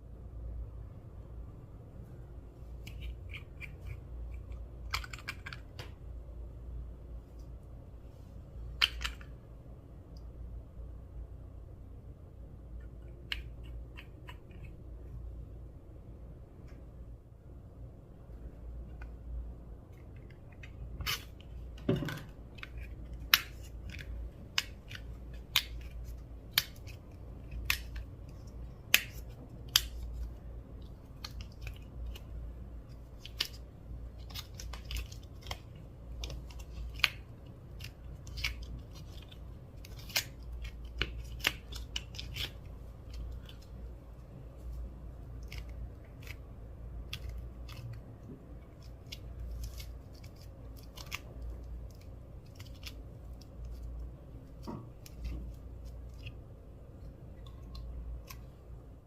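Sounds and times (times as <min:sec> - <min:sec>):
low hum: 0:00.0 - 0:59.0.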